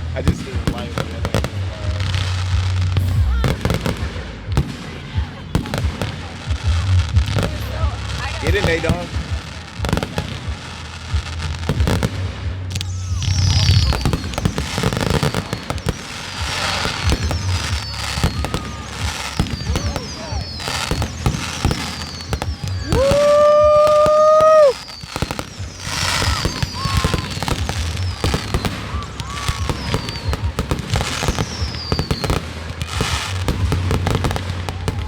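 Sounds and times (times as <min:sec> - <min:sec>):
fireworks pops and crackling: 0:00.0 - 0:35.0
loud steady whistling tone: 0:12.6 - 0:35.0
short falling whistles: 0:16.8 - 0:30.4.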